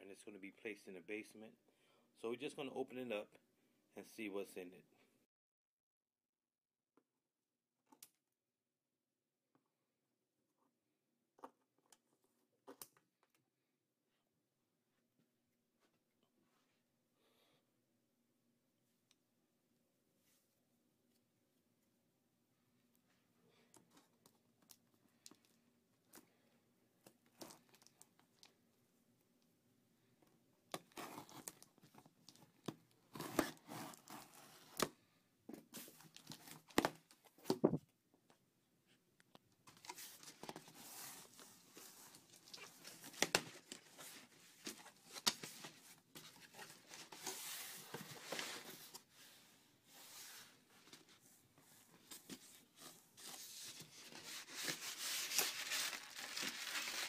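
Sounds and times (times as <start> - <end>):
packing tearing and crinkling: 54.2 - 57.0.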